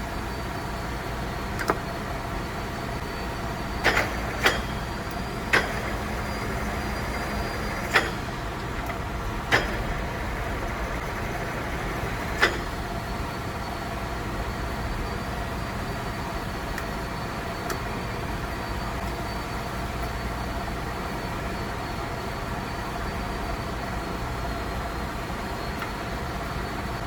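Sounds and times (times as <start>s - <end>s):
lathe running: 3.2s - 13.6s
sharp clicks or knocks: 8.8s - 10.0s.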